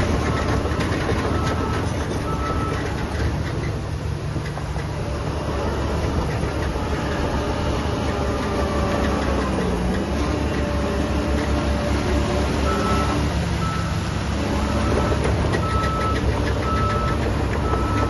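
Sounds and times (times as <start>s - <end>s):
diesel machinery running: 0.0s - 18.0s.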